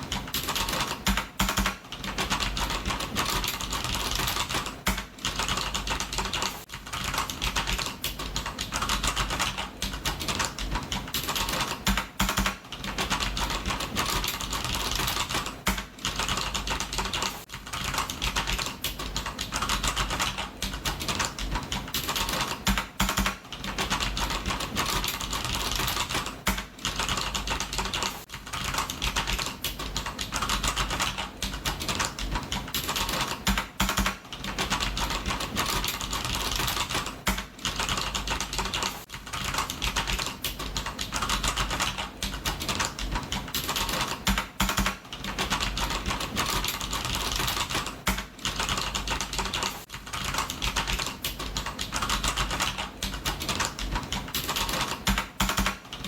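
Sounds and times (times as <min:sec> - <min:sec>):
fast typing on keyboard: 0:00.0 - 0:56.0.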